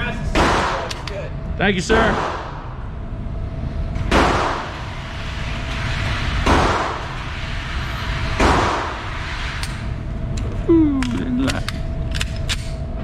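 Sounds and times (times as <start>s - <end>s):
gunshots with echo: 2.0s - 2.7s.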